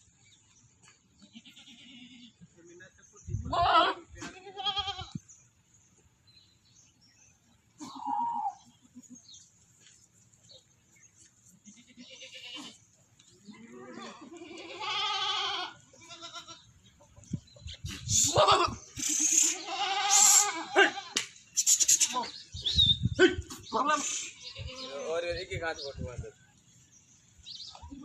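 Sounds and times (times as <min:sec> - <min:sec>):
goats bleating: 0:01.2 - 0:02.4, 0:03.5 - 0:05.2, 0:07.8 - 0:09.3, 0:11.6 - 0:16.7, 0:18.2 - 0:21.2, 0:24.2 - 0:25.1.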